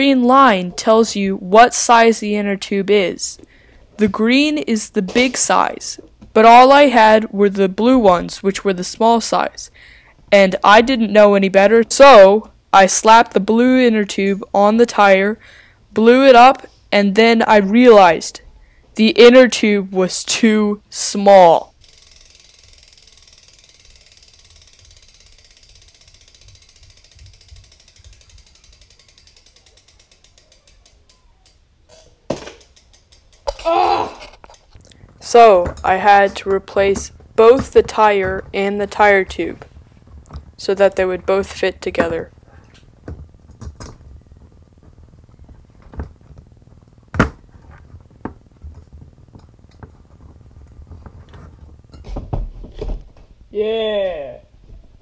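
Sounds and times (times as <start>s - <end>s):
bicycle freewheel ratchet clicking: 21.6s - 50.8s.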